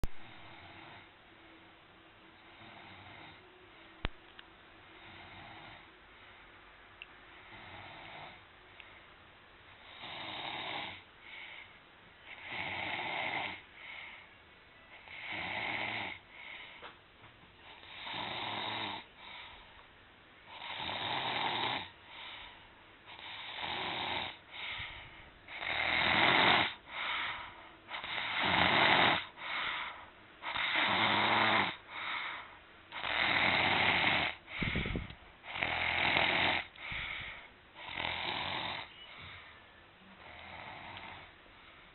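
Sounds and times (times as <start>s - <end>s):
soft breaths: 2.3s - 20.8s, 21.5s - 41.9s
person snoring: 12.3s - 13.6s, 15.0s - 16.6s, 17.7s - 19.1s, 20.5s - 21.9s, 23.1s - 24.8s, 25.5s - 29.7s, 30.4s - 32.1s, 33.0s - 38.9s.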